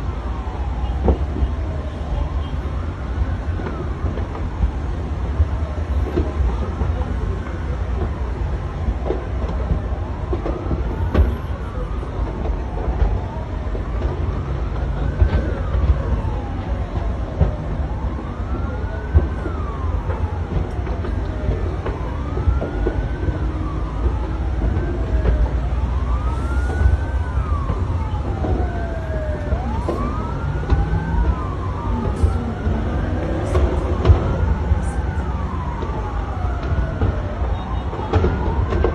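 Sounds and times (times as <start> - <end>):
siren wailing: 0.0 - 38.9
heavy low rumble: 12.1 - 37.5.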